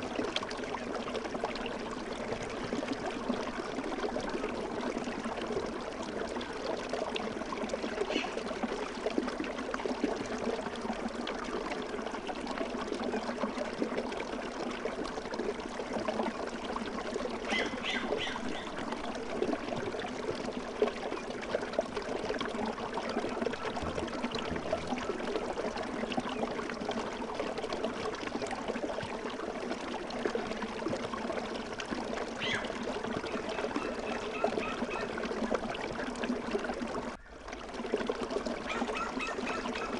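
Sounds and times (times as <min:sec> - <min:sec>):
trickling stream water: 0:00.0 - 0:39.9.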